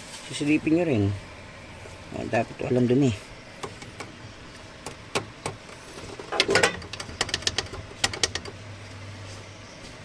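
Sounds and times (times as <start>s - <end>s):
clicks of parts being handled: 4.8s - 8.6s.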